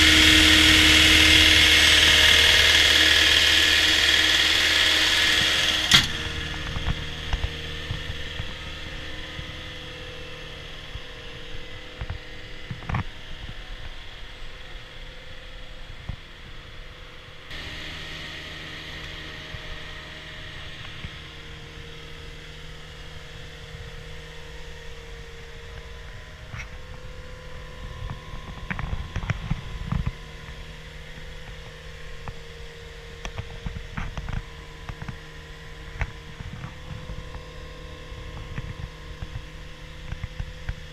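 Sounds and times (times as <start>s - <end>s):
diesel engine running: 0.0s - 13.5s, 17.5s - 32.3s.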